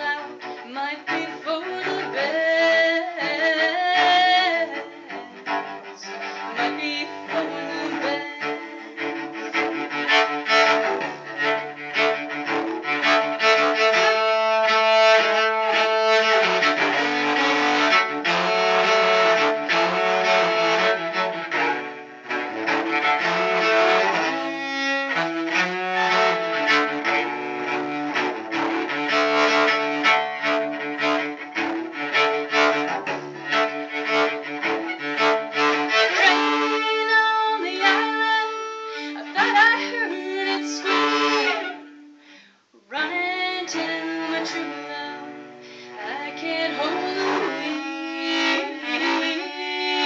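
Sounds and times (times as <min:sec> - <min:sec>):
bowed cello playing: 0:00.0 - 0:42.3, 0:42.9 - 0:50.0.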